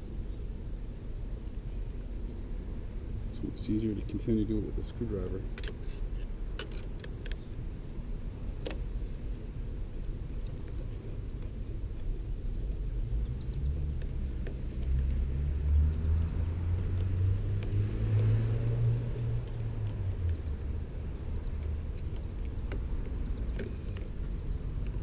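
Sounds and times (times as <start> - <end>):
car passing: 13.1 - 21.9.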